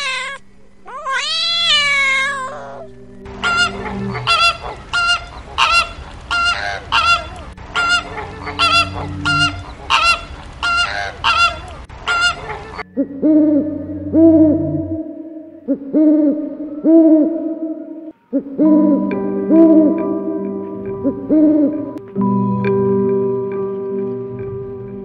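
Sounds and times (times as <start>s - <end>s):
cat meowing: 0.0s - 4.6s
goose honking: 1.4s - 12.8s.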